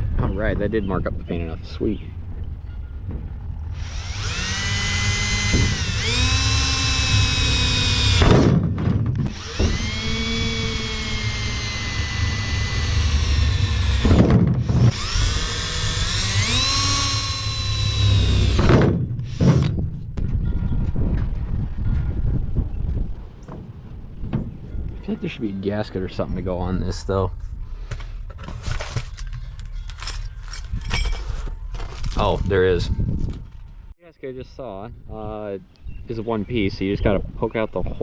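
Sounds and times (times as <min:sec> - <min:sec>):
cordless drill boring metal: 0:03.7 - 0:08.4, 0:09.2 - 0:19.7.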